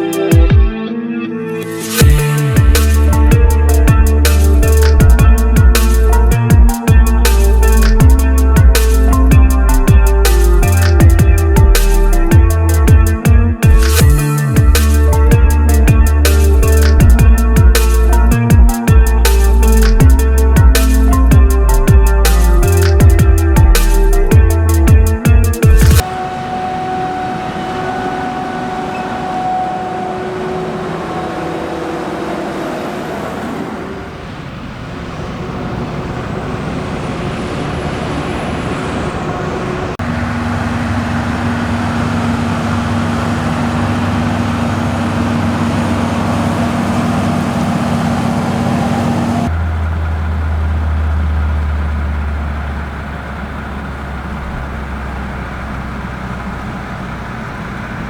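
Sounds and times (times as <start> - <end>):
heavy machinery engines running: 1.7 - 58.0
deep low hum: 2.0 - 34.1.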